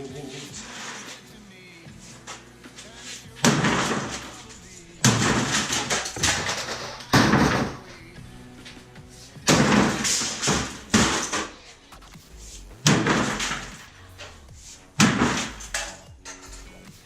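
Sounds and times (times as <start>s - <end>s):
heavy slams smashing computer: 3.4s - 4.4s, 5.0s - 7.9s, 9.4s - 11.5s, 12.8s - 13.8s.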